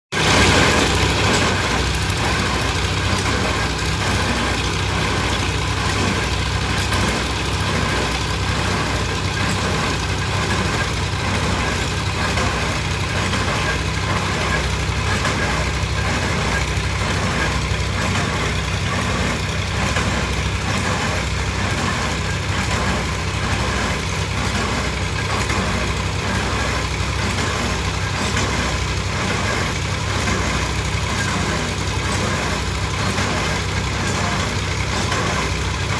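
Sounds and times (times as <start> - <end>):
piling machine engine running: 0.1 - 35.9.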